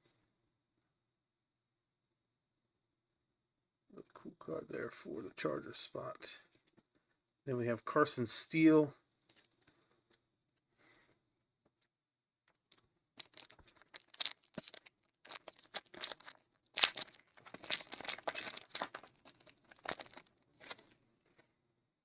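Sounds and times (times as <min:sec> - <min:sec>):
wrapper tearing and crinkling: 0:13.2 - 0:20.9.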